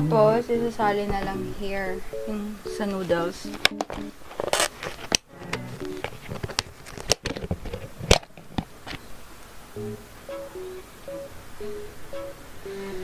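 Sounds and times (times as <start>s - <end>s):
soft plucked-string music: 0.0s - 4.2s, 5.4s - 6.1s.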